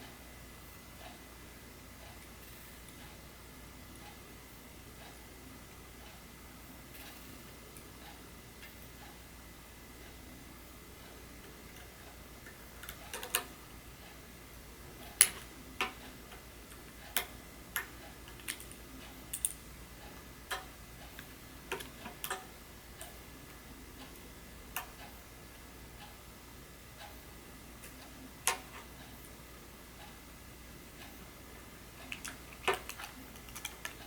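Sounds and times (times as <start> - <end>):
small tools clicking and tapping: 11.8 - 13.5, 15.2 - 19.6, 20.5 - 23.2, 32.0 - 34.0.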